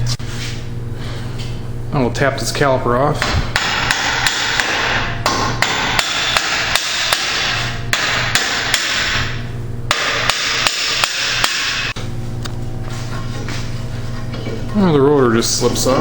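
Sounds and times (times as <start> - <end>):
hammer striking metal: 3.2 - 12.0.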